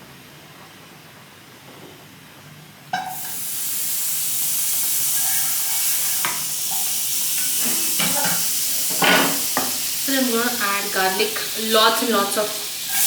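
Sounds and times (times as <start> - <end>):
butter sizzling in hot pan: 3.0 - 13.0
utensil knock: 7.6 - 9.8.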